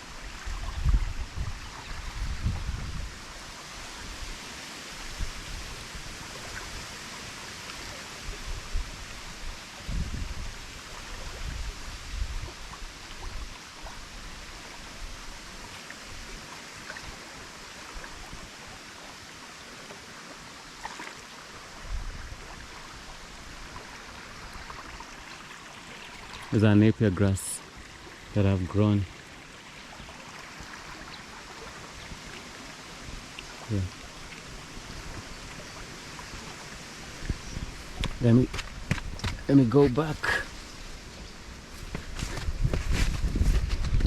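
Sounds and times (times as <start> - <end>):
river water flowing: 0.0 - 43.5
wind gusting on microphone: 0.3 - 3.4, 8.2 - 13.5, 34.5 - 44.0.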